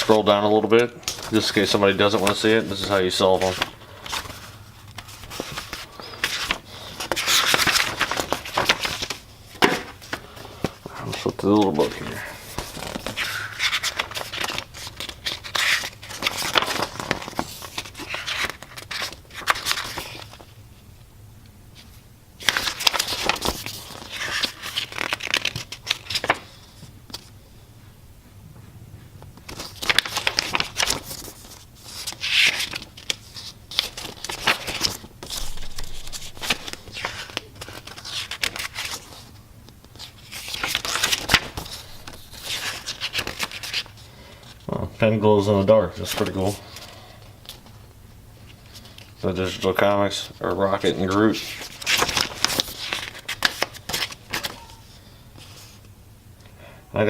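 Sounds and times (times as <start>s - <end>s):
pages flipping: 1.1s - 20.5s, 21.8s - 27.4s, 29.4s - 44.6s, 50.8s - 54.8s
packaging rustling and crinkling: 22.4s - 27.4s, 29.4s - 44.6s.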